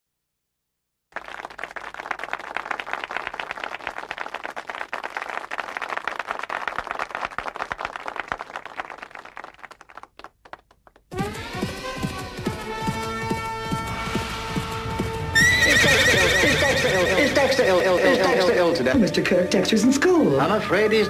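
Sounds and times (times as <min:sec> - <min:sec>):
audience applause: 0:01.1 - 0:13.0.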